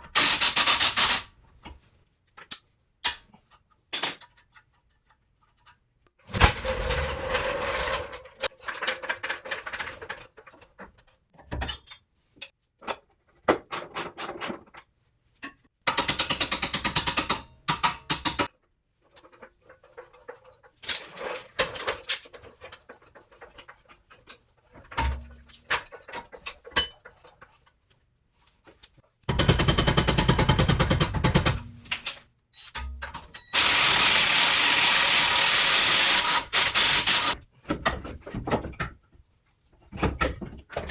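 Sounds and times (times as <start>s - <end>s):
impact wrench rattling: 33.6s - 37.4s.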